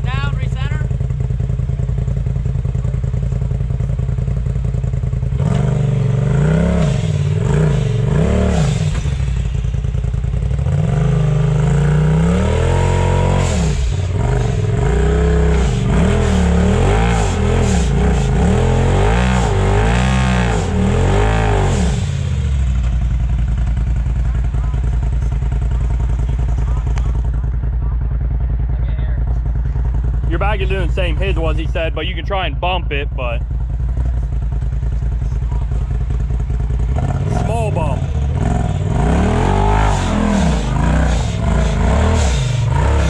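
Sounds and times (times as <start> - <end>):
utility vehicle engine revving: 0.0 - 43.0.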